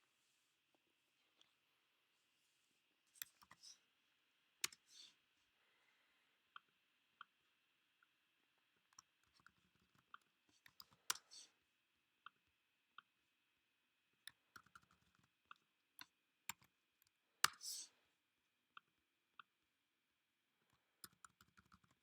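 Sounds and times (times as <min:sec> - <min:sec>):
mouse and keyboard clicks: 0:03.2 - 0:03.8, 0:04.6 - 0:05.0, 0:08.9 - 0:11.5, 0:14.3 - 0:16.7, 0:17.4 - 0:17.8, 0:21.0 - 0:22.0.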